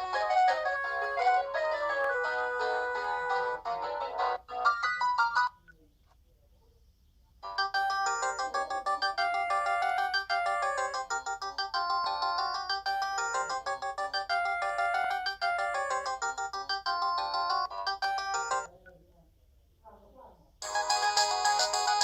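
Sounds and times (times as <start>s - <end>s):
polyphonic phone ringtone: 0.0s - 5.6s, 7.4s - 18.7s, 20.6s - 22.0s.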